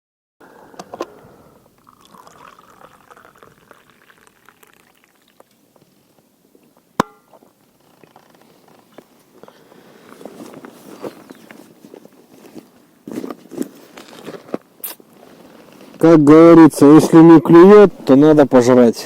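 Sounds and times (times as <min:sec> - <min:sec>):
liquid being poured: 0:01.8 - 0:05.5.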